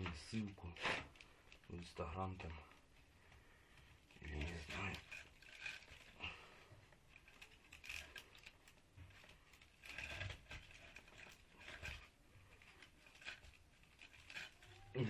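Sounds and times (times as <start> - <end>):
faint scrapes and knocks: 0.0 - 15.0.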